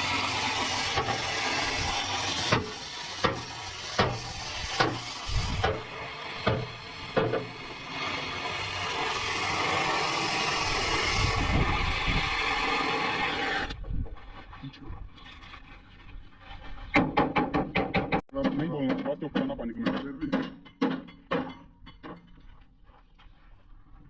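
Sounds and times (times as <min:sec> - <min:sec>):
steady hissing noise: 0:00.0 - 0:13.8
sharp knocks: 0:16.9 - 0:22.3.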